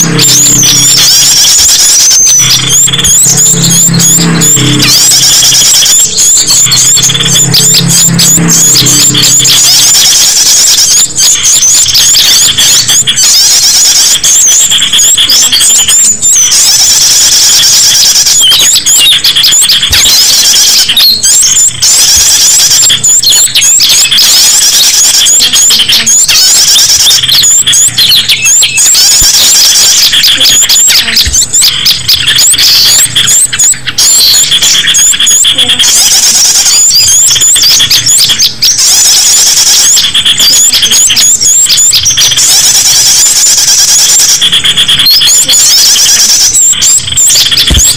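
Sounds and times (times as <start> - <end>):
chorus of small songbirds: 0.0 - 29.9.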